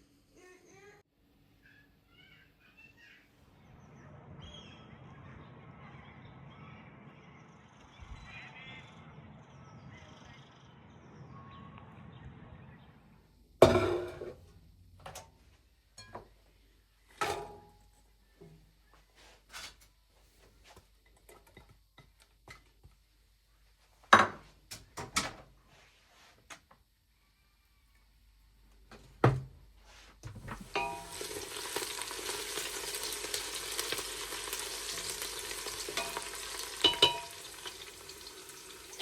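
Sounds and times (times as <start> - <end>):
objects knocking being set down: 13.6 - 14.4.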